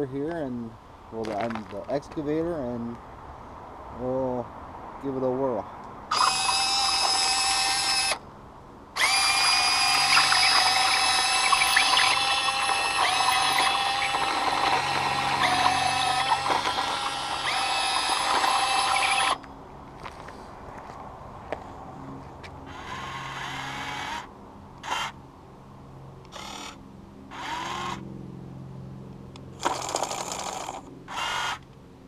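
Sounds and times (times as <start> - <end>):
electric motors whining: 6.1 - 8.2, 8.9 - 19.5, 22.6 - 25.2, 26.2 - 28.1, 29.6 - 31.7.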